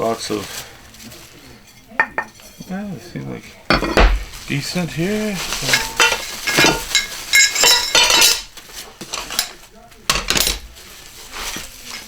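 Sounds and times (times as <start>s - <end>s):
metal parts clinking: 5.6s - 8.5s.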